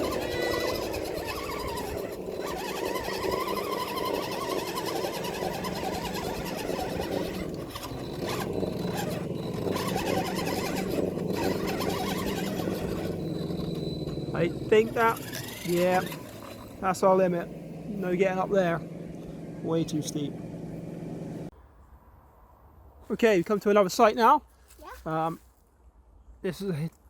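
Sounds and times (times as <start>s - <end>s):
electric motor whining: 0.0s - 21.5s.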